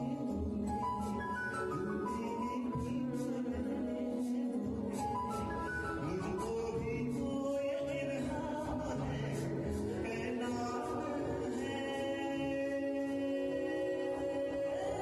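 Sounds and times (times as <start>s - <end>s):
slow film song with singing voices: 0.0s - 15.0s.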